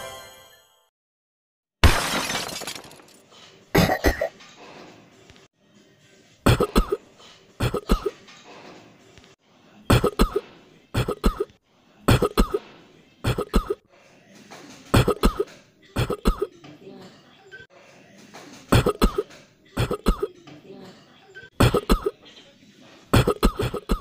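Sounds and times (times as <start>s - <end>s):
person coughing: 3.8s - 4.3s, 6.5s - 7.0s, 7.6s - 8.2s, 9.9s - 11.5s, 12.1s - 12.6s, 13.3s - 13.8s, 15.0s - 16.5s, 18.7s - 20.3s, 21.6s - 22.2s, 23.2s - 24.0s.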